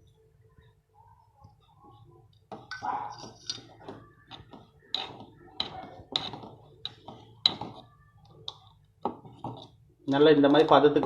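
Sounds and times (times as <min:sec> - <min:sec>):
spoon scraping a cooking pot: 0:02.6 - 0:09.8.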